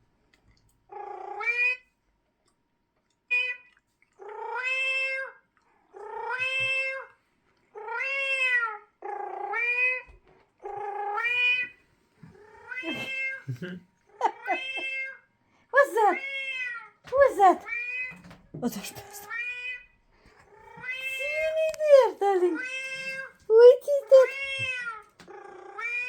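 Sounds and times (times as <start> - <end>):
cat meowing: 4.4 - 5.4, 6.1 - 7.1, 7.8 - 8.8, 12.4 - 13.5, 14.2 - 15.2, 15.8 - 18.3, 20.5 - 23.4, 24.0 - 26.0.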